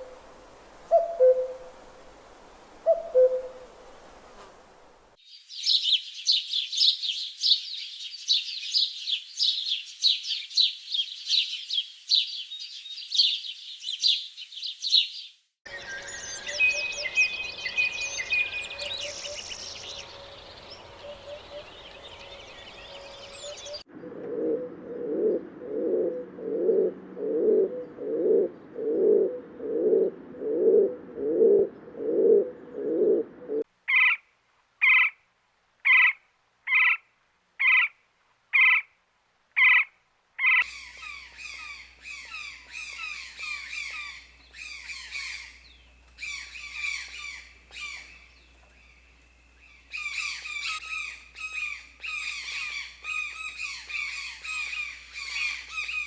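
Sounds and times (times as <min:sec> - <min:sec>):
overlapping high chirps and calls: 0:05.2 - 0:23.9, 0:40.6 - 0:56.0
dense bird chirping: 0:05.3 - 0:33.6, 0:40.6 - 0:56.0
low animal call: 0:15.7 - 0:33.6.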